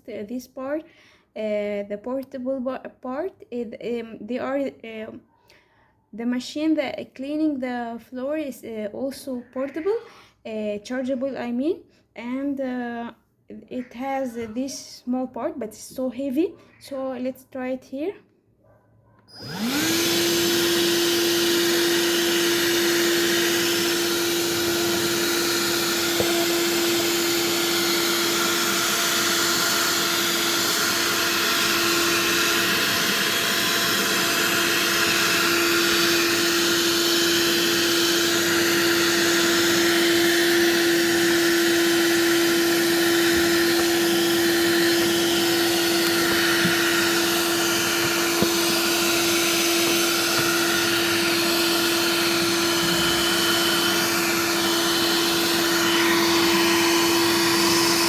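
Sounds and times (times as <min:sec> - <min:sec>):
handheld vacuum running: 0:19.3 - 0:58.0.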